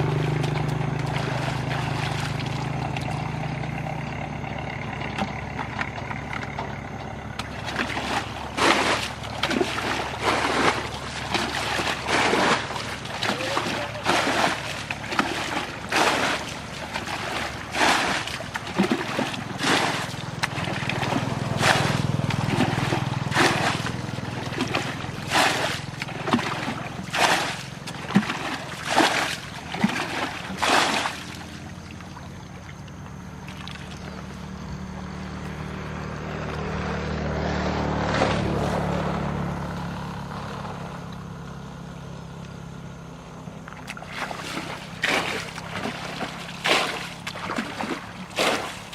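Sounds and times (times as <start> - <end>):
water splashing in strokes: 0.0 - 3.7, 7.4 - 34.6, 43.7 - 48.9
boat motor drone: 0.0 - 48.9.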